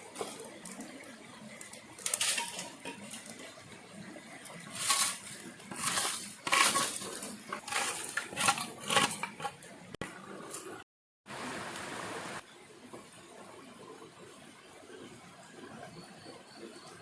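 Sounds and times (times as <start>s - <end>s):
utensils and cookware clinking: 2.0s - 3.6s, 4.6s - 9.8s.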